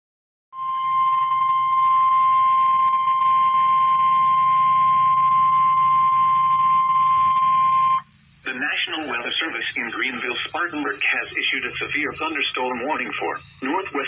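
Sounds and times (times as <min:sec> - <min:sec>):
low radio hum: 0:00.6 - 0:14.0
steady high alarm tone: 0:00.6 - 0:14.0.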